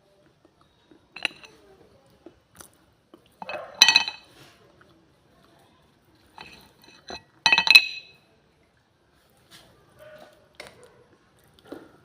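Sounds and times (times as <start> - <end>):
baked clay cracking and clinking: 0.6 - 4.4, 6.2 - 8.3.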